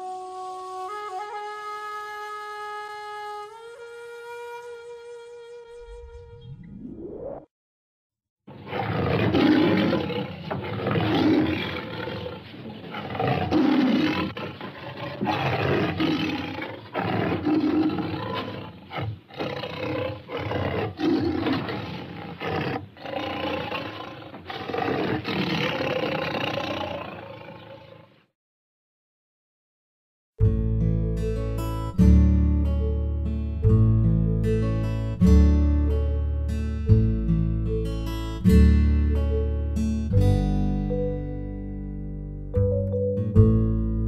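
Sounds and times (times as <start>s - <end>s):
tiger growling: 8.6s - 28.0s.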